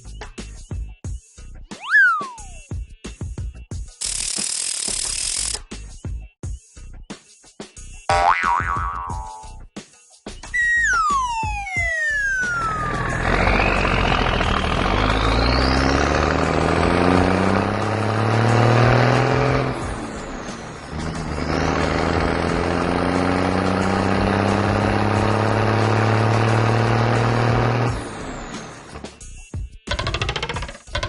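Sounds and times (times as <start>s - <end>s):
background music: 5.0s - 31.0s
vehicle engine with high whine: 10.6s - 29.2s.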